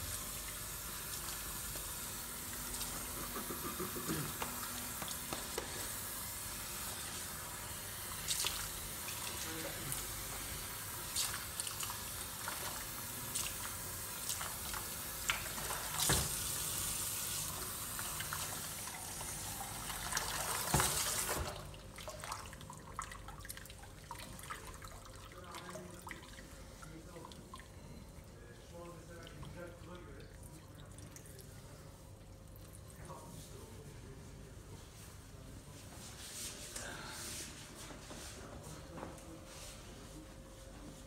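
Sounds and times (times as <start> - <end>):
water running from a tap: 0.0 - 26.5.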